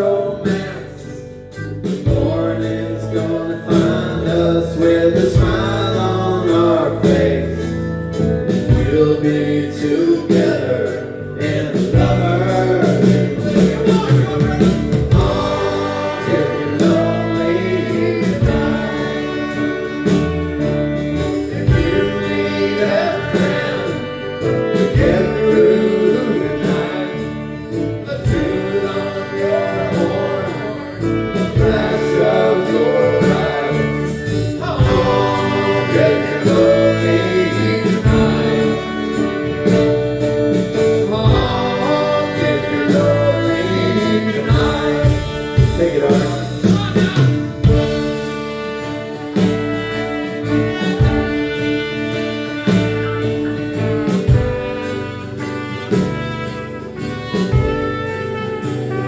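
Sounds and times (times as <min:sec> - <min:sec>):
live band playing: 0:00.0 - 0:59.0
person singing: 0:08.7 - 0:20.5, 0:21.2 - 0:39.9, 0:40.8 - 0:49.4.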